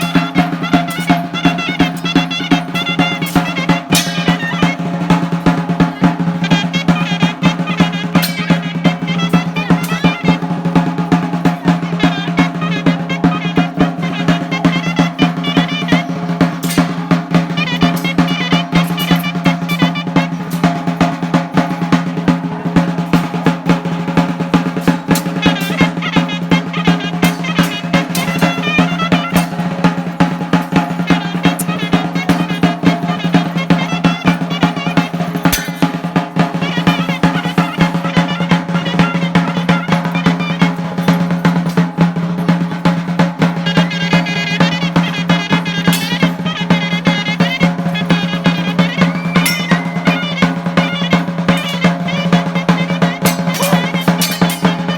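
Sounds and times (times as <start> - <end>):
double-reed pipe melody: 0.0 - 54.9
snare drum rolling: 43.7 - 54.9.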